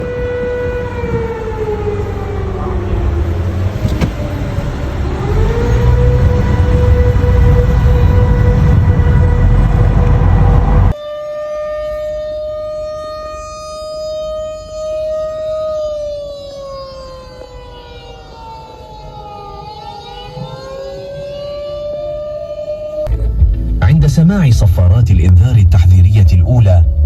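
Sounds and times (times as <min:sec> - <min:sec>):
air-raid siren wailing: 0:00.0 - 0:23.1
heavy rumble: 0:01.0 - 0:11.0.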